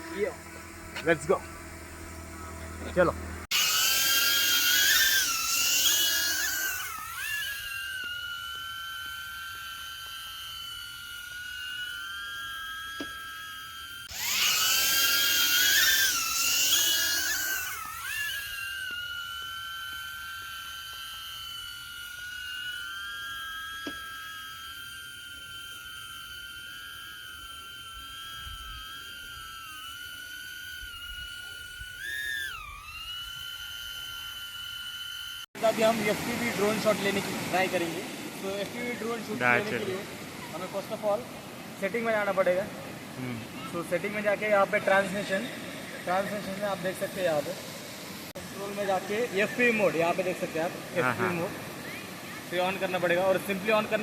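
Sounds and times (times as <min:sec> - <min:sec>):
drone propellers whining: 0:00.0 - 0:54.0.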